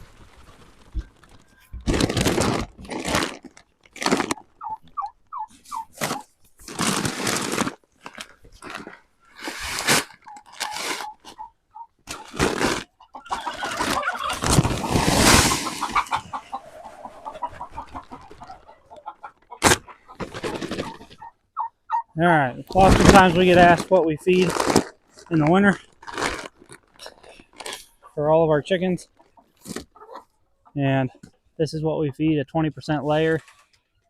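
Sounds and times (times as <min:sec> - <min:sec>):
bursts of rustling: 0:00.0 - 0:11.4, 0:12.0 - 0:21.3, 0:22.6 - 0:28.2
chickens clucking: 0:04.2 - 0:06.3, 0:10.2 - 0:25.5, 0:27.0 - 0:31.3.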